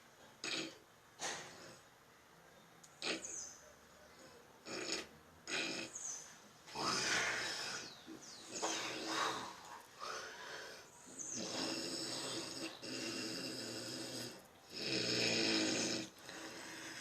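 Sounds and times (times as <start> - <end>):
person snoring: 6.7 - 7.9, 8.5 - 17.0.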